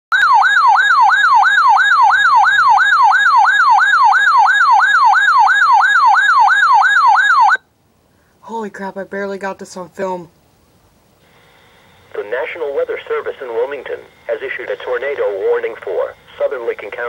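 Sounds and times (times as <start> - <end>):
electronic warbling siren tone: 0.1 - 7.6.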